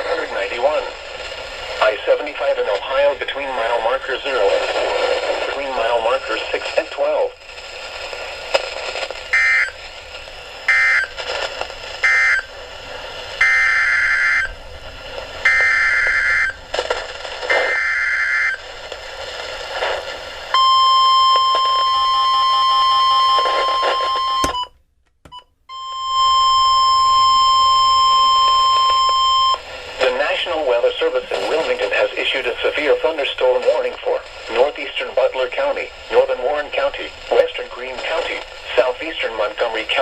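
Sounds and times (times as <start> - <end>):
steady warning alarm tone: 9.3 - 9.8, 10.7 - 11.1, 12.0 - 12.5, 13.4 - 14.5, 15.4 - 16.6, 20.6 - 24.8, 25.4 - 29.6.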